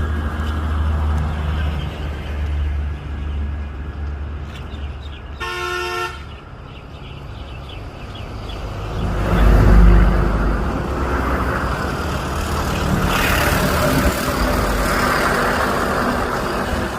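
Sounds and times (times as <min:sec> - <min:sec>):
road traffic rumbling: 0:00.0 - 0:16.9
vehicle horn toot: 0:05.4 - 0:06.3
vehicle passing: 0:07.1 - 0:16.9.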